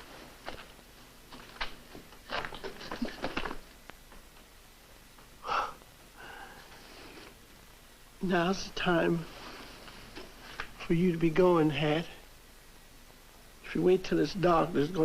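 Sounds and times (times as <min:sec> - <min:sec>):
person sobbing and sniffling: 0:05.4 - 0:06.6.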